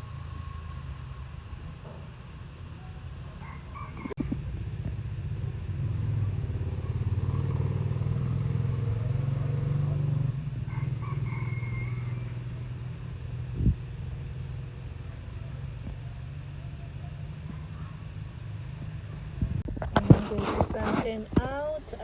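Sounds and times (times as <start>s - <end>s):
rooster crowing: 0.0s - 4.4s, 7.3s - 13.0s
passing motor vehicle engine: 0.0s - 22.0s.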